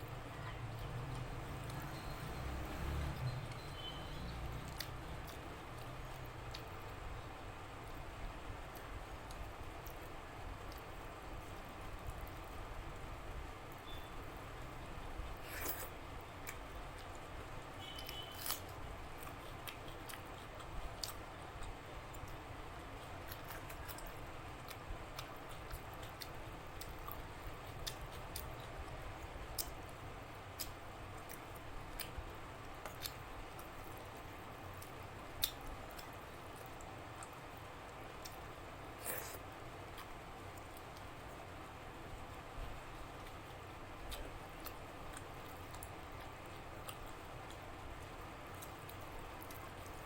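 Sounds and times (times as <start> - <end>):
chewing and mouth clicks: 4.5 - 6.7, 18.0 - 22.4, 23.0 - 34.2, 34.8 - 38.4, 44.0 - 50.0.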